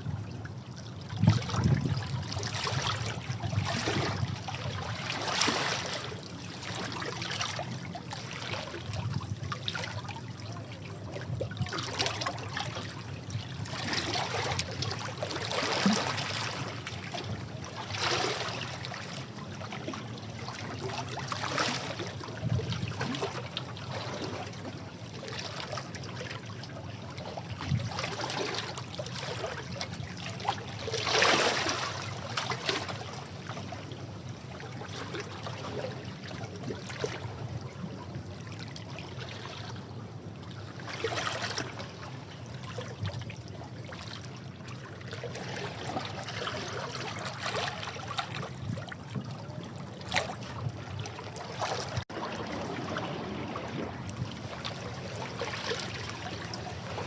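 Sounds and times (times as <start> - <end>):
sea waves washing over rocks: 51.8 - 57.0.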